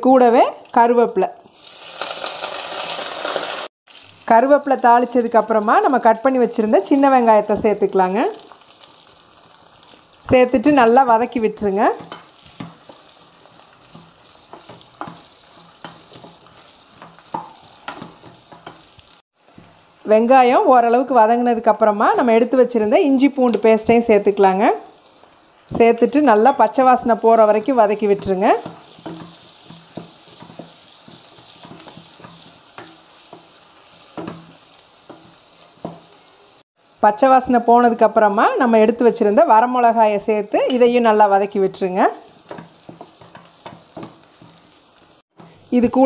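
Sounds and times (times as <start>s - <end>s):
shallots sizzling in oil: 0.0s - 46.0s
spatula scraping a pan: 12.0s - 19.7s, 28.5s - 36.3s.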